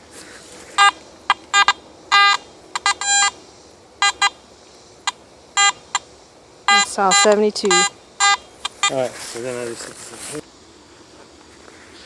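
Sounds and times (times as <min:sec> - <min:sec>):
metal detector beeps: 0:00.8 - 0:03.4, 0:04.0 - 0:04.4, 0:05.6 - 0:06.0, 0:06.7 - 0:09.0
metal detector held tones: 0:00.8 - 0:03.4, 0:06.7 - 0:09.0.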